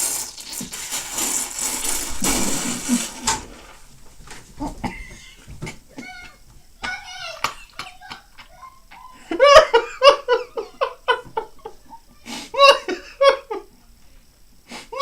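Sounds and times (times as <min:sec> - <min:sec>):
young children laughing: 0:04.6 - 0:13.7.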